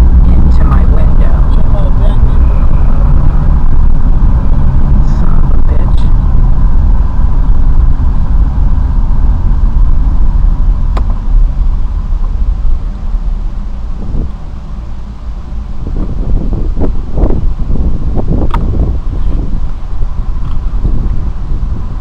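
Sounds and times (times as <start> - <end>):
car low rumble: 0.0 - 22.0
sharp click: 10.9 - 11.2, 18.4 - 18.7.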